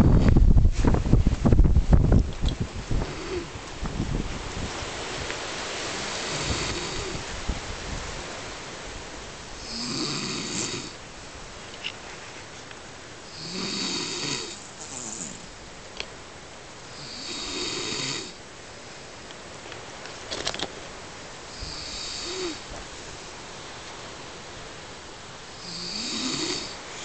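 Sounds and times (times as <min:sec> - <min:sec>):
man snoring: 0:03.0 - 0:03.5, 0:06.2 - 0:07.2, 0:09.6 - 0:11.0, 0:13.3 - 0:15.5, 0:17.0 - 0:18.4, 0:21.6 - 0:22.6, 0:25.6 - 0:26.8.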